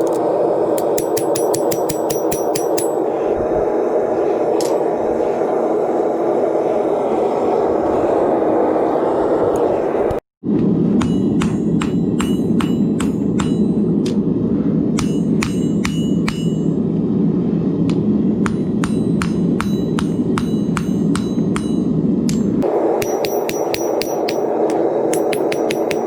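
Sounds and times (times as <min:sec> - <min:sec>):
gas forge burner roaring: 0:00.0 - 0:26.0
hammer striking steel on anvil: 0:00.8 - 0:03.0, 0:11.0 - 0:14.2, 0:14.9 - 0:16.8, 0:17.9 - 0:26.0.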